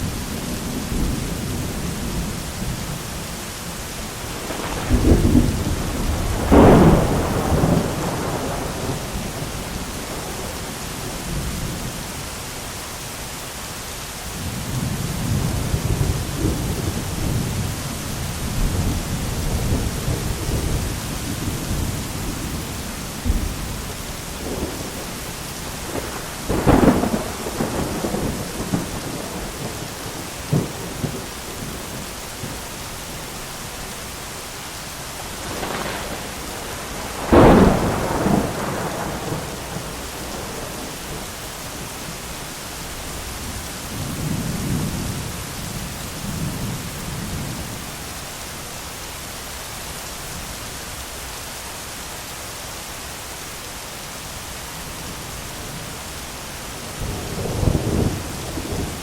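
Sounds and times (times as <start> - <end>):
heavy rain: 0.0 - 59.0
thunder cracks and rumbling: 4.2 - 11.9, 14.4 - 32.6, 35.4 - 41.4, 56.9 - 59.0.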